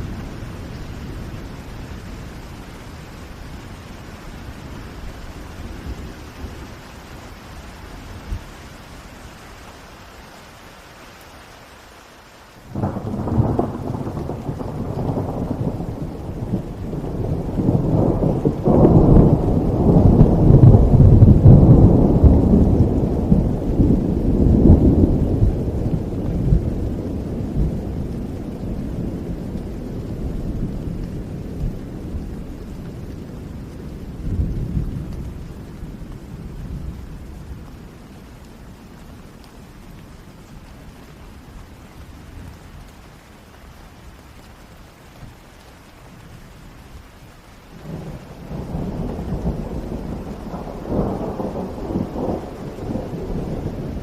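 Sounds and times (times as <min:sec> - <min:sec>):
steady rain: 0:00.0 - 0:54.0
thunder clap and rumble: 0:12.7 - 0:40.7, 0:47.7 - 0:54.0.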